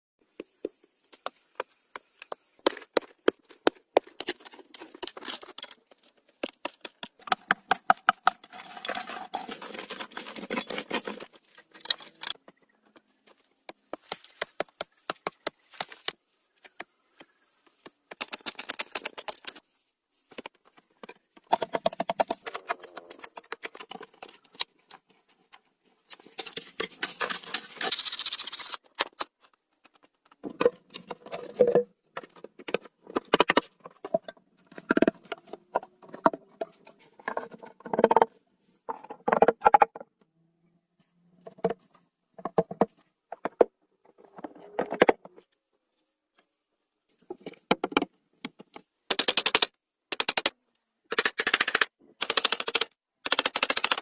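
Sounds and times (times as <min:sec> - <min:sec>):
scraping and rustling of branches: 0:08.5 - 0:12.4.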